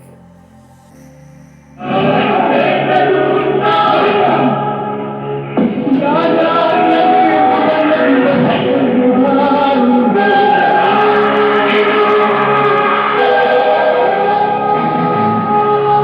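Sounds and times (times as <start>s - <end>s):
film music with choir singing: 0.0s - 16.0s.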